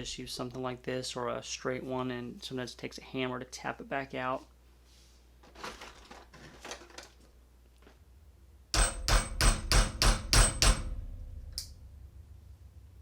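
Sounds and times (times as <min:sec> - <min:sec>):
hammer tapping steel tool: 0:08.8 - 0:11.7.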